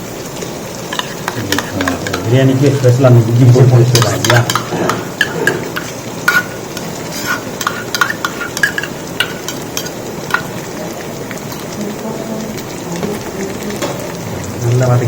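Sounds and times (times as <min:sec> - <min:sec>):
food sizzling in hot oil: 0:00.0 - 0:15.0
ladle clinking against pot: 0:00.9 - 0:02.2, 0:03.9 - 0:10.6
ladle stirring and scraping pot: 0:00.9 - 0:03.0, 0:03.8 - 0:10.7.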